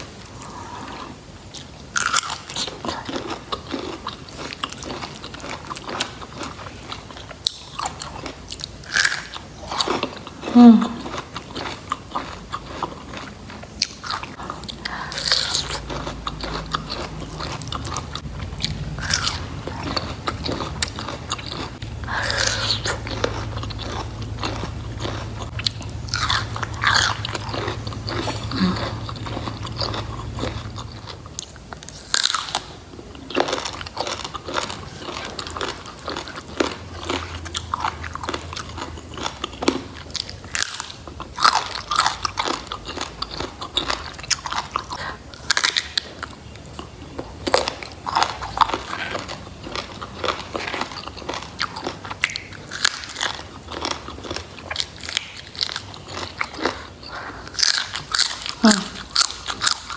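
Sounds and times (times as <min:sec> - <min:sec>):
crunching and chewing: 0:00.0 - 0:59.9
low hum: 0:17.2 - 0:31.9.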